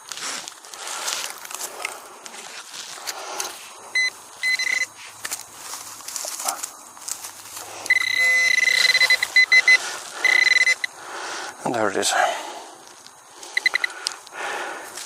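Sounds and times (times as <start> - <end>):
scraping and rustling of soil: 0.0 - 15.0
high-pitched electronic beeps: 4.0 - 4.9, 7.9 - 10.9, 13.6 - 13.9.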